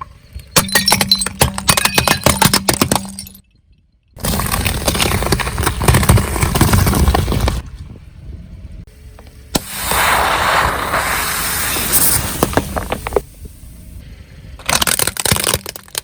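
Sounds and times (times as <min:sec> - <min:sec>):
tyre crushing objects: 0:04.2 - 0:07.6
steady hiss: 0:08.9 - 0:14.2.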